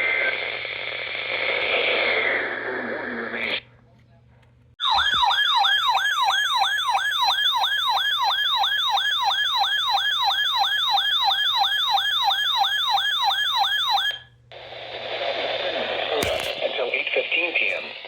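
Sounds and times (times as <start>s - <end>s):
electronic siren alert tone: 4.8s - 14.2s.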